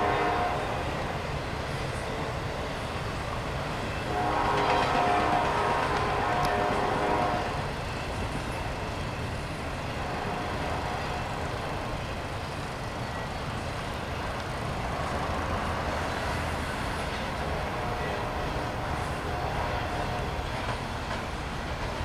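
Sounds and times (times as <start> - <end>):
freight train rumbling past: 0.0 - 22.0.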